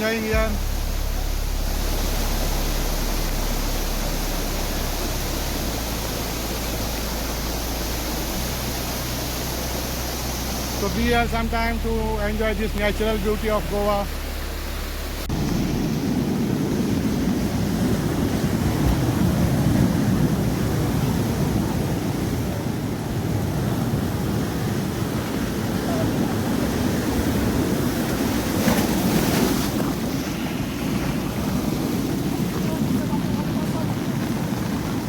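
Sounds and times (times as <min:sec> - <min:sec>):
sea waves washing onto beach: 0:00.0 - 0:35.0
wind buffeting microphone: 0:15.2 - 0:35.0.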